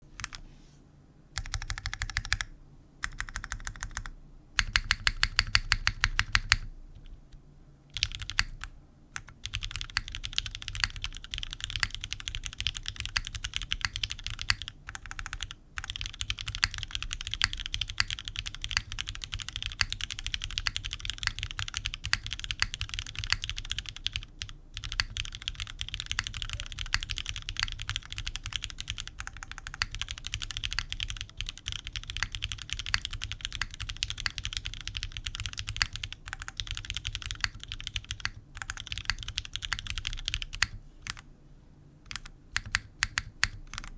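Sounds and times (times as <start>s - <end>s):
mechanical keyboard typing: 0.2s - 0.4s, 1.4s - 7.2s, 7.9s - 41.2s, 42.1s - 43.9s.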